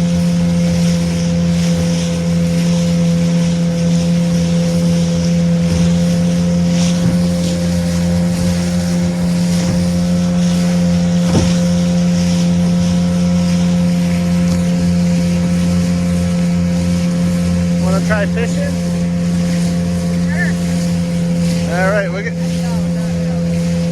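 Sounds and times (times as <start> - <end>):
motorboat engine droning: 0.0 - 23.9
water and wind hiss: 0.0 - 23.9
brief knock: 7.0 - 7.4, 11.3 - 11.7.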